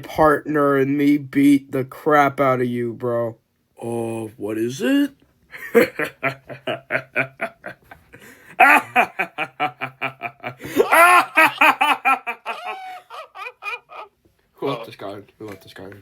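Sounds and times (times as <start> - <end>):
person laughing maniacally: 5.6 - 14.1.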